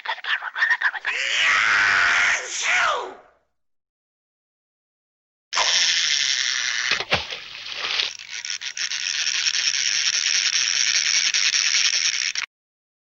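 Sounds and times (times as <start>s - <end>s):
high hissing rattle: 7.5s - 12.4s.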